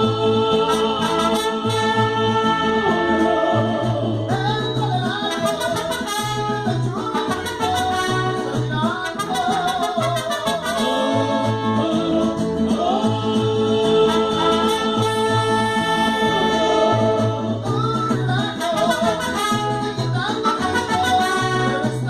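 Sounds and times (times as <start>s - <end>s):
bass line: 0.0s - 22.0s
person singing: 0.0s - 22.0s
trumpets and violins melody: 0.5s - 3.9s, 5.3s - 12.0s, 14.0s - 17.4s, 18.5s - 22.0s.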